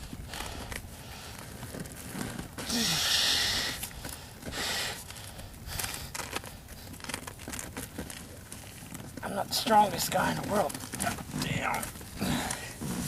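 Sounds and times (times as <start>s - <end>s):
man grunting with effort: 2.6s - 3.2s
man's hissing exhalations: 2.7s - 3.7s
seat cover rustling: 5.1s - 13.0s.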